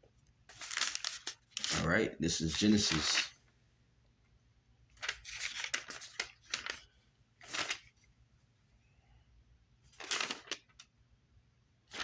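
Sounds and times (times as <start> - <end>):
paper pages rustling: 0.5 - 1.9, 2.5 - 3.3, 5.0 - 8.0, 9.9 - 10.9.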